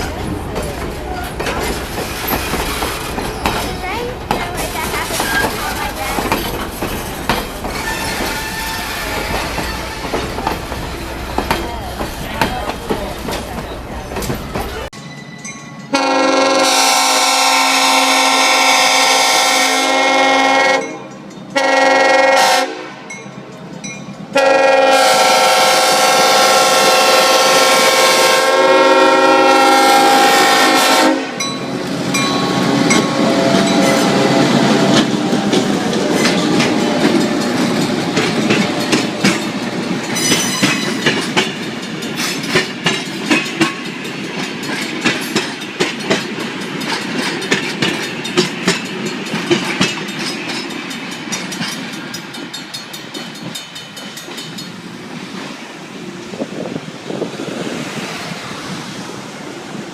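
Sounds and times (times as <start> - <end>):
train wheels clicking over rail joints: 0.0 - 14.9, 31.3 - 55.7
steam locomotive whistle blasts: 15.9 - 23.0, 24.4 - 31.4.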